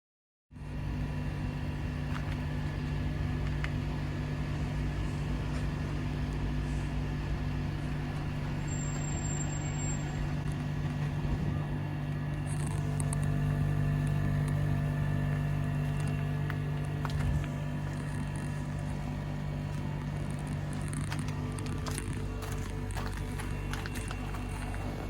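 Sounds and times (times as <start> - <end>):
refrigeration unit humming: 0.6 - 25.0.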